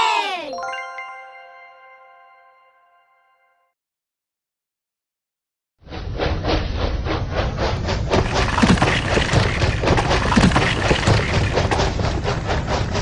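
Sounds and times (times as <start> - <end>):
toy train rattling on track: 8.1 - 13.0.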